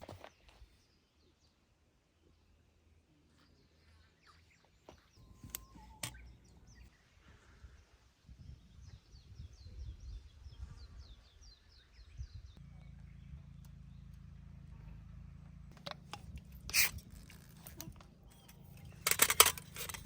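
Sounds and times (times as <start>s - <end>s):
bird chirping: 0.3s - 14.5s
low rumble: 12.0s - 17.4s.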